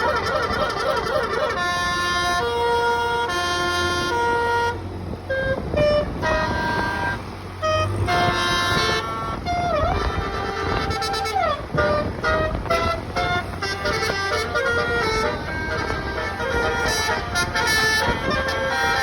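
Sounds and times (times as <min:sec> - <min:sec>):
multi-note bus horn tune: 0:00.0 - 0:19.0.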